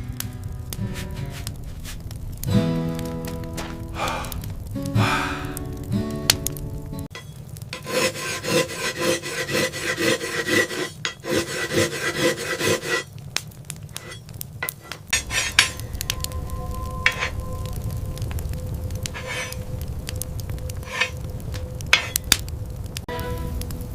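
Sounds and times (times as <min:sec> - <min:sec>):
rhythmic scraping strokes: 0:00.8 - 0:02.1, 0:07.1 - 0:13.1, 0:14.0 - 0:19.7, 0:20.8 - 0:21.3, 0:21.9 - 0:22.3.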